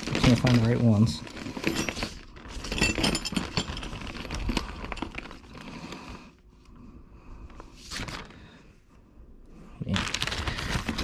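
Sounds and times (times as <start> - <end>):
metal bolts clinking and rattling: 1.6 - 4.3.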